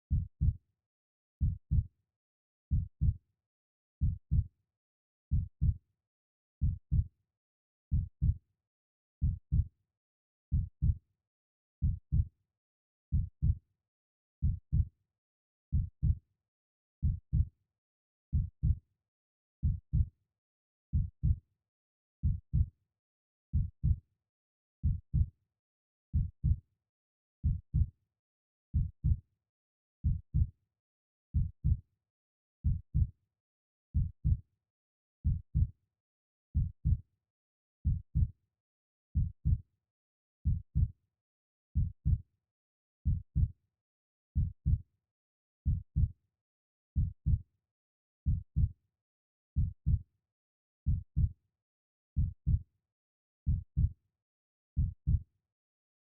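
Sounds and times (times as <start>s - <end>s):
slow heartbeat: 0.1s - 0.6s, 1.4s - 1.8s, 2.7s - 3.2s, 4.0s - 4.5s, 6.6s - 7.0s, 9.2s - 9.7s, 11.8s - 12.3s, 13.1s - 13.6s, 14.4s - 14.9s, 17.0s - 17.5s, 19.6s - 20.1s, 20.9s - 21.4s, 22.2s - 22.7s, 23.5s - 24.0s, 24.8s - 25.3s, 26.1s - 26.6s, 27.4s - 27.9s, 28.8s - 29.2s, 30.0s - 30.5s, 31.4s - 31.8s, 32.6s - 33.1s, 34.0s - 34.4s, 35.2s - 35.7s, 36.6s - 37.0s, 37.8s - 38.3s, 39.2s - 39.6s, 40.4s - 40.9s, 41.8s - 42.2s, 43.0s - 43.5s, 44.4s - 44.8s, 45.6s - 46.1s, 47.0s - 47.4s, 48.2s - 48.7s, 49.6s - 50.0s, 50.9s - 51.3s, 52.2s - 52.6s, 53.5s - 53.9s, 54.8s - 55.2s.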